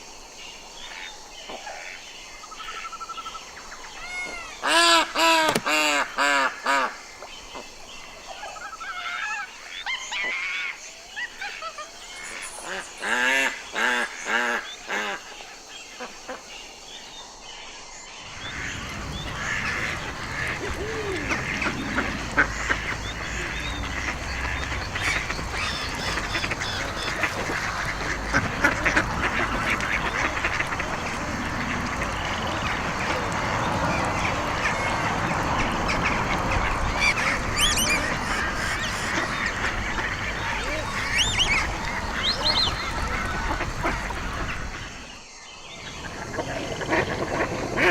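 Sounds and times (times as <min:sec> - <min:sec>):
flock of ducks calling: 0:00.8 - 0:16.4, 0:18.3 - 0:47.9
ducks quacking: 0:03.9 - 0:09.4, 0:11.2 - 0:16.4, 0:18.3 - 0:47.9.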